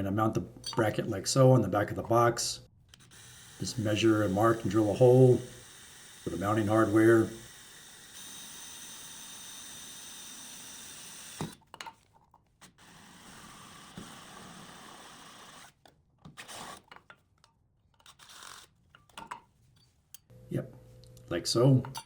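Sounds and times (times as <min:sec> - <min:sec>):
electric drill drilling metal: 0:03.0 - 0:11.6, 0:12.8 - 0:15.8.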